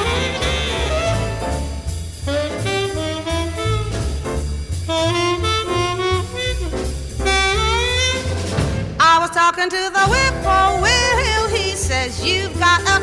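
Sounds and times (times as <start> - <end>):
saxophone solo: 0.0 - 4.3, 4.9 - 8.9
walking bass: 0.0 - 9.2, 10.0 - 13.0
drums: 0.0 - 13.0.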